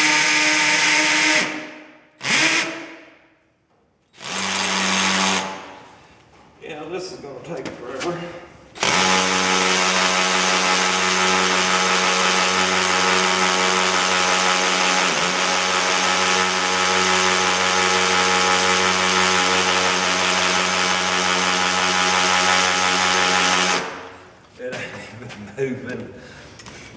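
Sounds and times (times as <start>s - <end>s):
electric drill boring into concrete: 0.0s - 1.6s, 2.2s - 2.8s, 4.2s - 5.6s, 8.8s - 24.0s.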